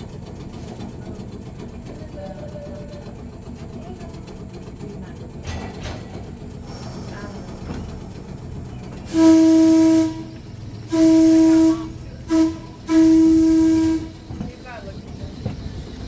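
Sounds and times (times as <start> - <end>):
trolley running rumble: 0.0 - 16.0
trolley air horn blasts: 9.0 - 14.5.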